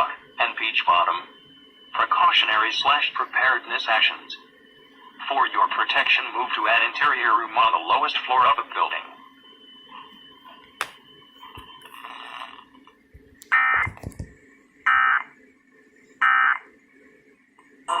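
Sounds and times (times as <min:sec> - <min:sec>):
buzzing data tone bursts: 0:13.5 - 0:14.0, 0:14.8 - 0:15.3, 0:16.2 - 0:16.7.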